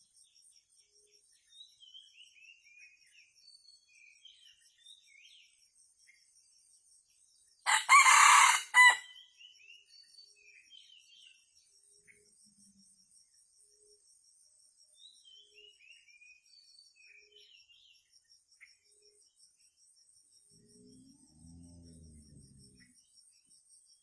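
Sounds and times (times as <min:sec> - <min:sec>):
rooster crowing: 0:07.7 - 0:09.1.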